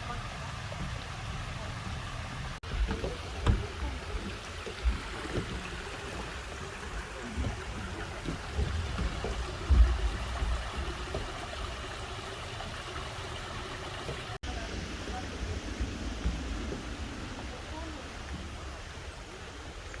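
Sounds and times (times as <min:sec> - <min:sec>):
stream rushing over rocks: 0:00.0 - 0:20.0
low thumps: 0:01.9 - 0:12.0.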